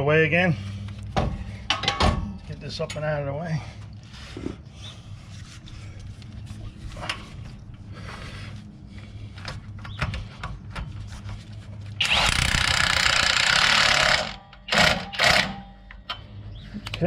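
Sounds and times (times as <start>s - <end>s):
tools and parts clinking: 1.6s - 3.2s, 13.6s - 17.0s
power tool running: 12.0s - 15.6s.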